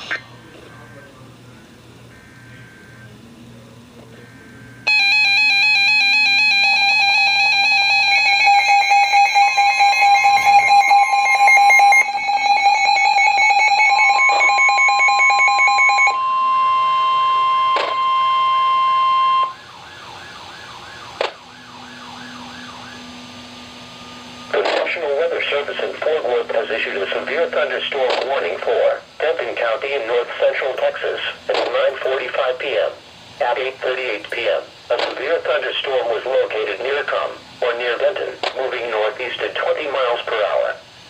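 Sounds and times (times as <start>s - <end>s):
electronic alert tone with warble: 4.9s - 19.6s.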